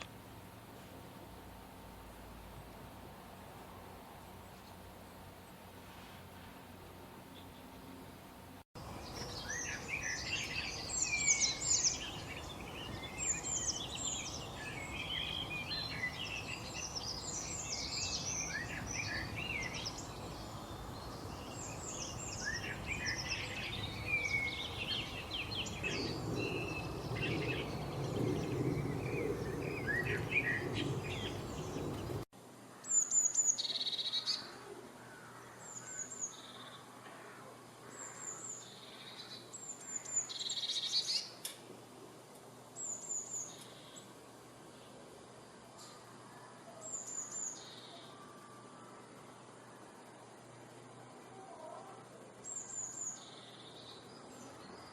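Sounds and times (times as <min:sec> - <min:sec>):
birds chirping and singing: 0:08.8 - 0:32.2.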